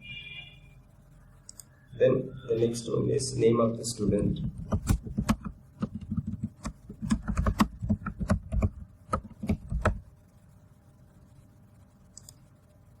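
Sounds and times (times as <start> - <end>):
typing on computer keyboard: 4.4 - 10.0.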